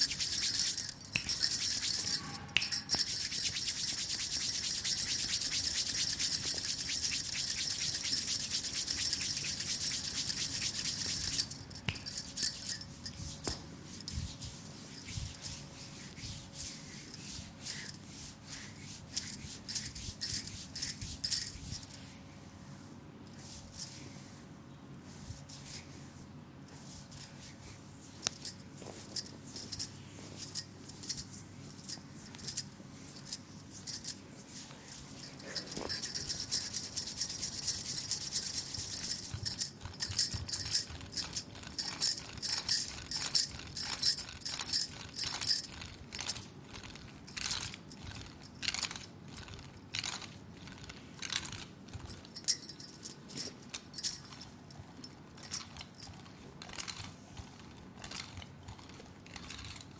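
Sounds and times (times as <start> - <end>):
hands rubbing oiled skin: 0.0 - 22.2, 26.8 - 44.0.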